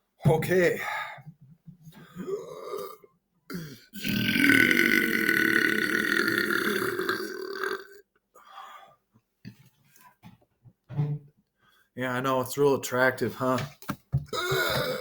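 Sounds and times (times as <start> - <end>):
man belching: 2.2 - 8.0, 14.3 - 15.0.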